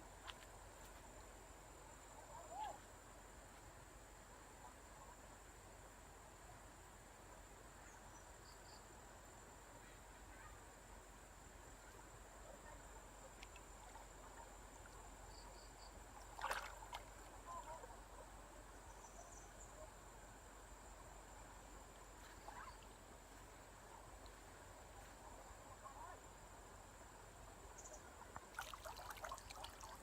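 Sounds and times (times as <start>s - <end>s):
faint water ambience: 0.0s - 30.0s
water splash: 16.2s - 17.3s, 28.5s - 30.0s
water sloshing: 16.2s - 17.4s, 28.4s - 30.0s.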